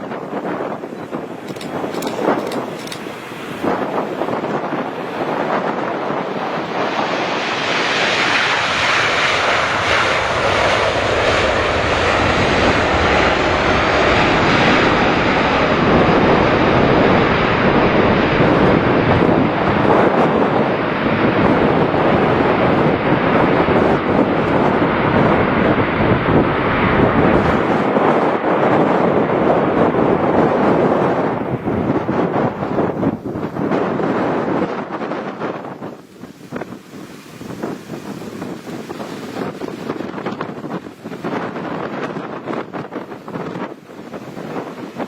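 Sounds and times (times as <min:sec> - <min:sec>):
jet engines running: 0:00.0 - 0:36.0.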